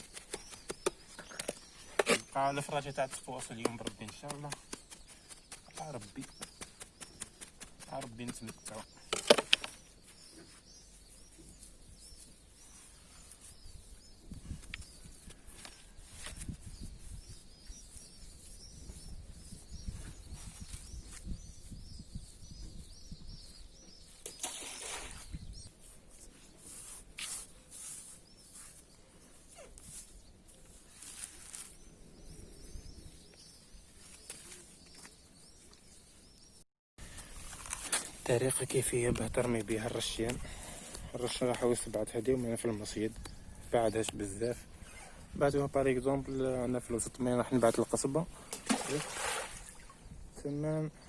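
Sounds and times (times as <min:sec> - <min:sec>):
small birds chirping: 0:00.0 - 0:51.0.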